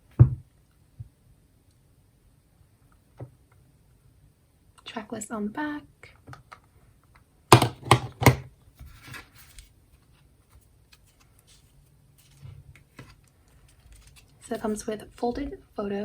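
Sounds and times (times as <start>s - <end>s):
paper rustling: 7.6s - 14.9s
sharp packaging handling sounds: 10.5s - 14.8s.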